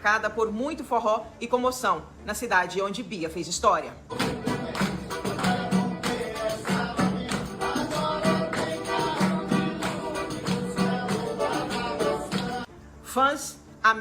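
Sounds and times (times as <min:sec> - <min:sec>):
quick percussion beat: 0:04.1 - 0:12.7.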